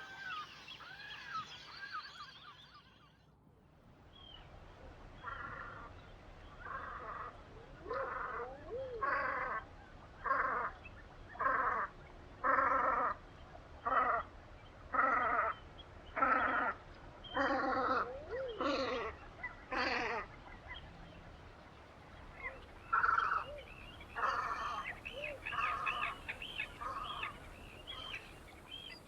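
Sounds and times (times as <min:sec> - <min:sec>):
soft rising and falling whistles: 0:00.0 - 0:03.2.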